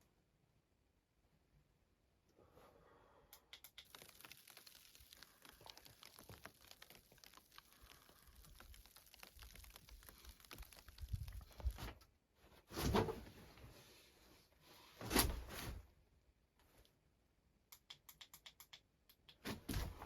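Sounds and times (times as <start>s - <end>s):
rustling and crinkling: 3.8s - 15.9s.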